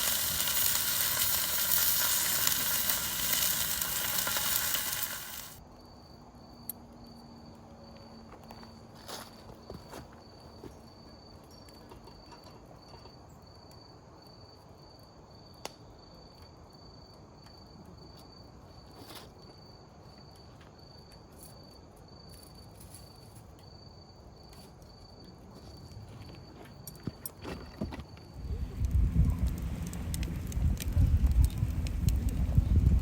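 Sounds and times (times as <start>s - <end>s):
wood fire crackling: 0.0s - 5.6s, 28.2s - 33.0s
cricket chirping: 0.0s - 28.8s.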